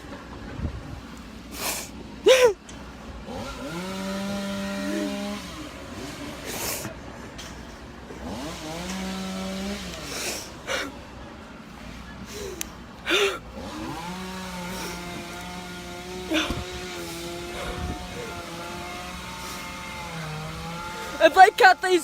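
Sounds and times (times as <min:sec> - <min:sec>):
chainsaw revving: 0:01.5 - 0:07.0, 0:08.0 - 0:11.0, 0:12.2 - 0:22.0
person crying out: 0:02.2 - 0:02.6, 0:13.1 - 0:13.4.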